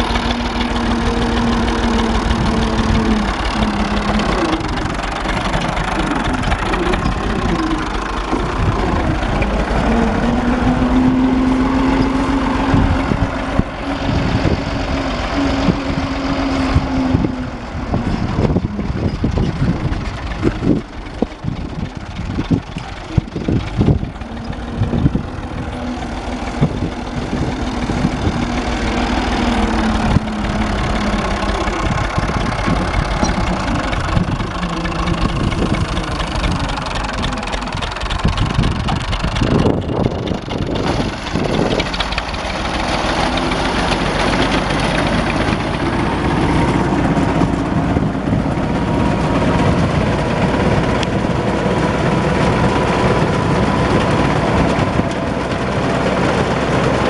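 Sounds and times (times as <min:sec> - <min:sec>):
tractor diesel engine running: 0:00.0 - 0:57.0
reaper knocks and rattles: 0:18.0 - 0:57.0.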